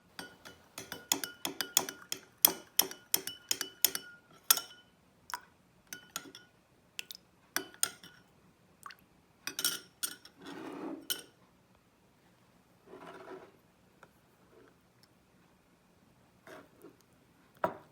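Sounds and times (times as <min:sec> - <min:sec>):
metal spoon clinking on glass: 0:00.2 - 0:04.9, 0:05.9 - 0:06.5, 0:07.6 - 0:08.2, 0:09.5 - 0:10.4, 0:11.1 - 0:11.4
scraping rustling noises: 0:10.4 - 0:11.1, 0:12.8 - 0:13.6.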